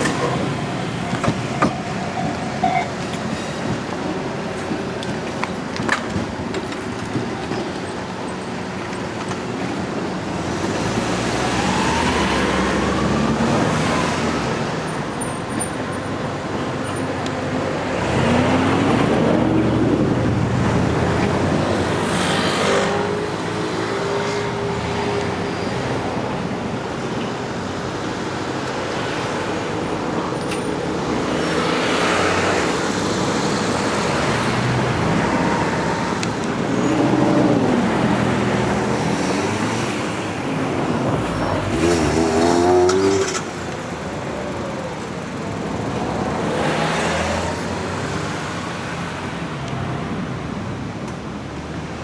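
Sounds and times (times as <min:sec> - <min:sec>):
steady traffic noise: 0:00.0 - 0:52.0
vehicles passing by: 0:00.0 - 0:52.0.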